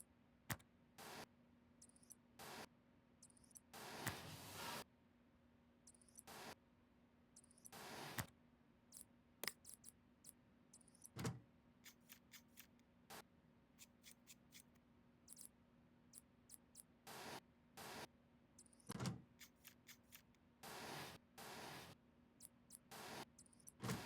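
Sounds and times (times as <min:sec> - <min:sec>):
light clicks of small parts: 0:08.9 - 0:12.9.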